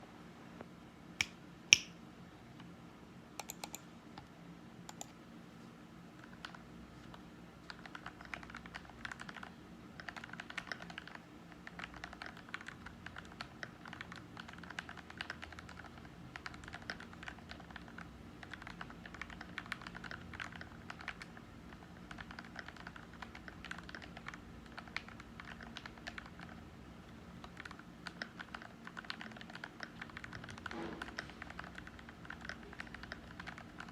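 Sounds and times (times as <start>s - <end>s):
mechanical keyboard typing: 3.4s - 3.8s, 6.2s - 26.6s, 27.4s - 33.9s
sharp clicks: 3.4s - 3.8s.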